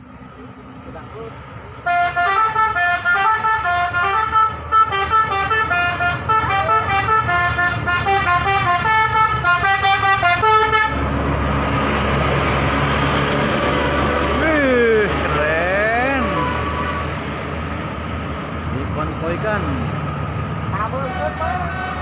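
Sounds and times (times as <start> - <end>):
bus engine rumble: 0.0 - 22.0
bus musical horn melody: 1.8 - 11.1, 16.2 - 17.2, 20.8 - 22.0.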